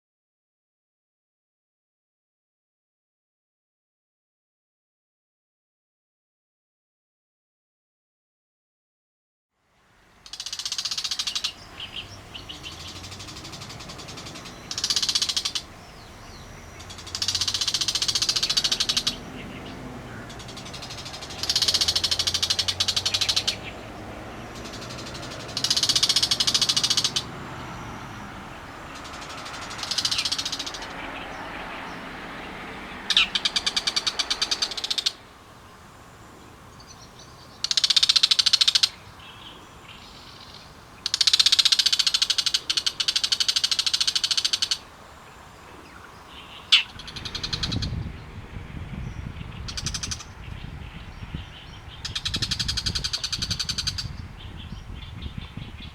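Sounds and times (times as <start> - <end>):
shrike harsh chattering calls: 10.2 - 48.2, 49.0 - 54.3.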